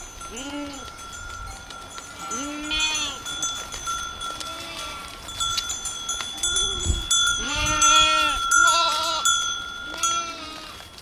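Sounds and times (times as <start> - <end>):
goats bleating: 0.2 - 1.0, 2.2 - 3.4, 4.2 - 5.3, 6.4 - 10.9.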